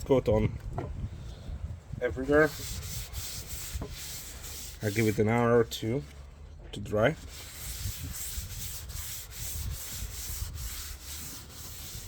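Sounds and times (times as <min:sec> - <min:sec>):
hand rubbing wooden board: 0:02.2 - 0:06.4, 0:07.1 - 0:12.0.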